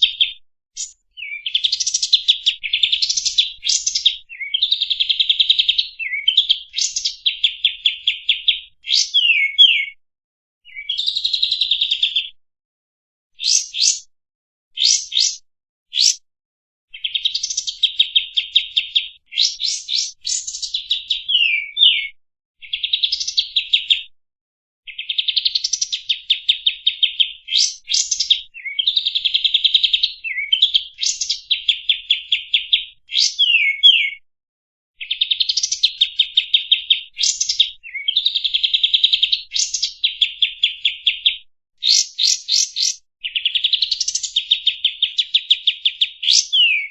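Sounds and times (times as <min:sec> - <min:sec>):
bird singing trilled song: 0:00.0 - 0:10.0, 0:10.7 - 0:12.4, 0:13.4 - 0:14.1, 0:14.8 - 0:16.2, 0:16.9 - 0:24.1, 0:24.9 - 0:34.2, 0:35.0 - 0:46.9.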